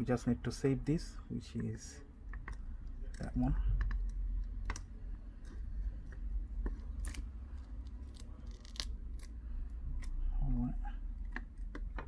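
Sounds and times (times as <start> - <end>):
small tools clicking and tapping: 2.3 - 8.8.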